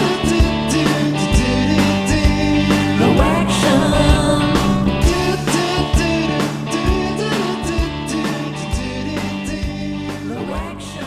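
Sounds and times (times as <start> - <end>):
person singing: 0.0 - 9.6, 10.3 - 11.0
steady drum beat: 2.7 - 6.2.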